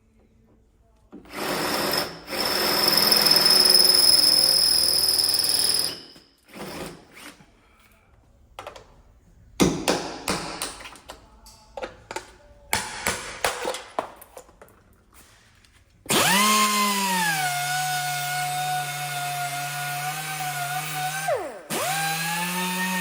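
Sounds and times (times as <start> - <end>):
power tool whining: 16.1 - 23.0.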